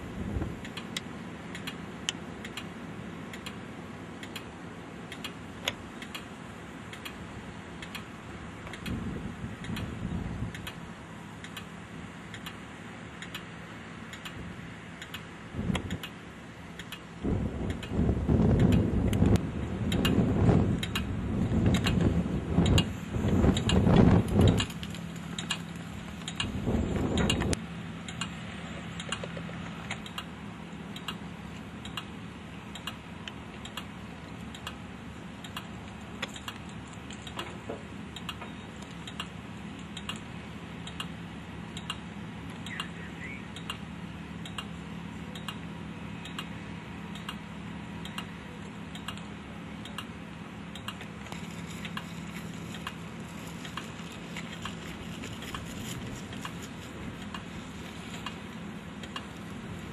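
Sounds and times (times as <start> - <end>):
steady low hum: 0.0 - 59.9
light ticking: 0.6 - 59.9
wind buffeting microphone: 8.7 - 10.6, 17.2 - 27.6.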